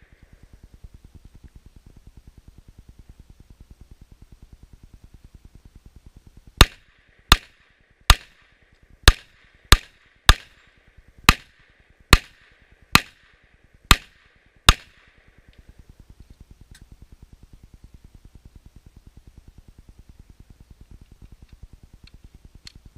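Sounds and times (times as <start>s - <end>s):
pistol shots: 6.6s - 15.2s.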